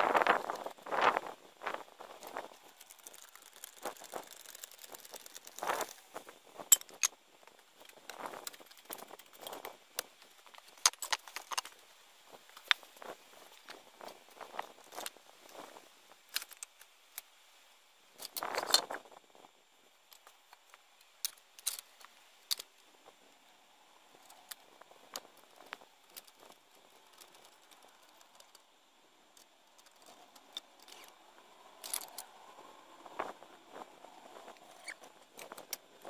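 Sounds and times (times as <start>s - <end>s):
objects clicking and knocking: 2.2s - 11.8s.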